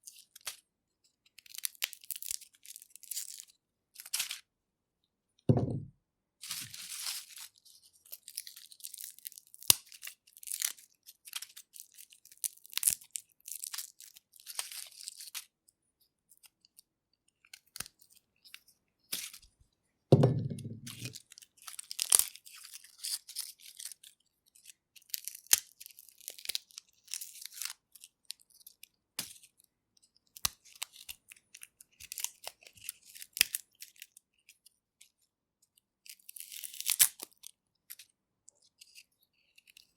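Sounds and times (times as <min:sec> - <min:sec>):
garlic skins crackling and tearing: 0:01.4 - 0:04.4, 0:06.6 - 0:15.5, 0:17.4 - 0:18.6, 0:20.9 - 0:29.6, 0:30.3 - 0:34.2, 0:36.0 - 0:38.0
dull knock: 0:05.5 - 0:05.9, 0:20.1 - 0:20.9.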